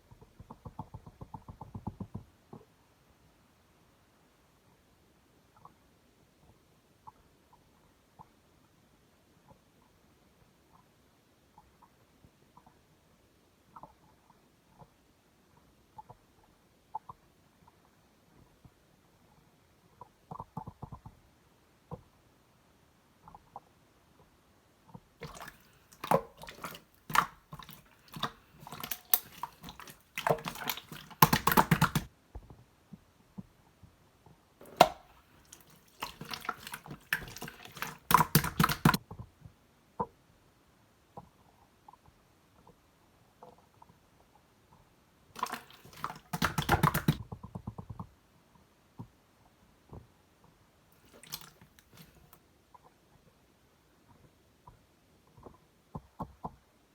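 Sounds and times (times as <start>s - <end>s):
slime squelching and popping: 25.2s - 32.1s, 34.6s - 39.0s, 45.4s - 47.2s, 51.0s - 52.4s.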